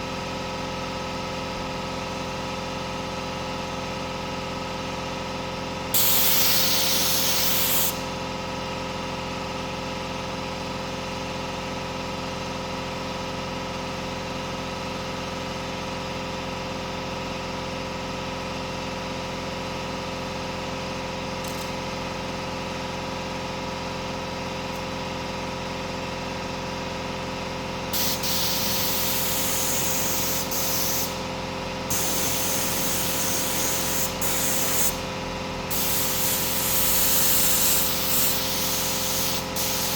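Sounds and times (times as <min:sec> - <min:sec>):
steady mechanical hum: 0:00.0 - 0:39.9
air spray gun hissing: 0:06.0 - 0:08.1, 0:27.9 - 0:39.9.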